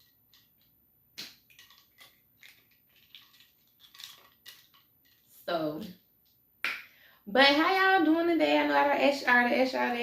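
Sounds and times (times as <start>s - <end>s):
mussel shells clicking and crackling: 1.2s - 5.3s.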